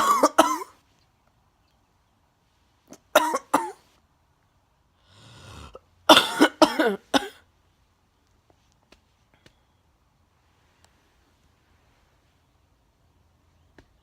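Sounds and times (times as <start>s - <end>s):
person coughing bursts: 0.0s - 0.8s, 3.0s - 3.8s, 6.1s - 7.4s
person drawing breath: 5.0s - 5.8s.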